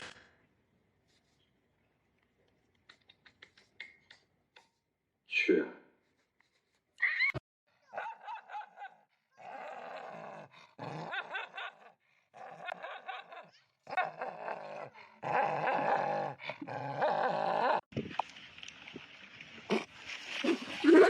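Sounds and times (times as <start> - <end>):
dog whining and growling: 9.4 - 17.9.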